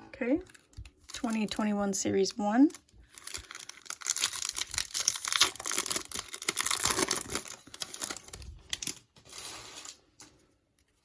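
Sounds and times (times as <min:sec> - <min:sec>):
plastic wrapper tearing and crinkling: 0:00.4 - 0:01.7, 0:02.7 - 0:10.0.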